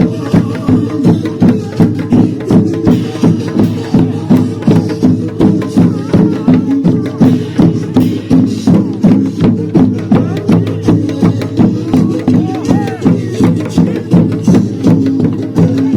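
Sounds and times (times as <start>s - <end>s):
steady percussive beat: 0.0s - 15.9s.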